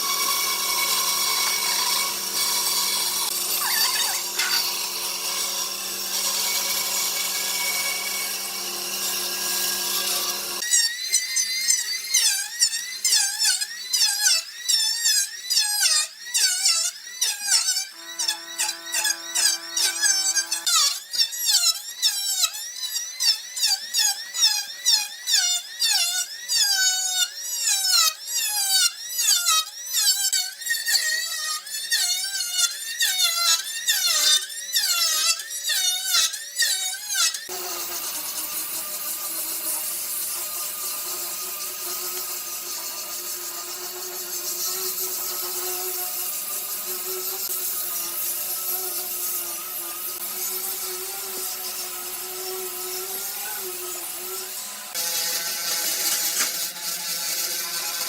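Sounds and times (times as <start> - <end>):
power tool whirring: 0.0 - 58.0
squeaking hand strokes on wood: 3.5 - 4.8.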